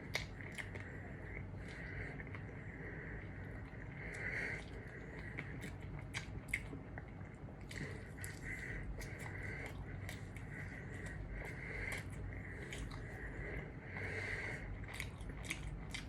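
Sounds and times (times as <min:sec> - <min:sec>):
person chewing food: 0:00.0 - 0:16.0
wet mouth clicks and smacks: 0:00.1 - 0:00.8.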